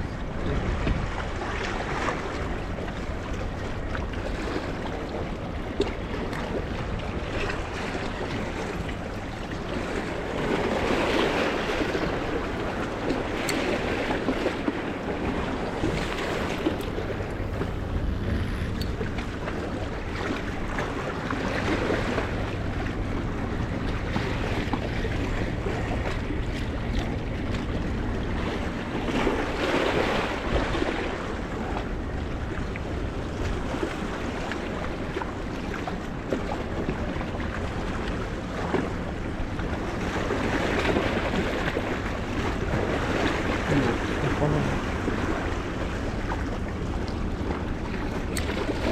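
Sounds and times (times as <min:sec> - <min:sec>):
wind buffeting microphone: 0:00.0 - 0:37.1
steady low rumble: 0:00.0 - 0:48.9
sea waves splashing on rocks: 0:04.4 - 0:23.0.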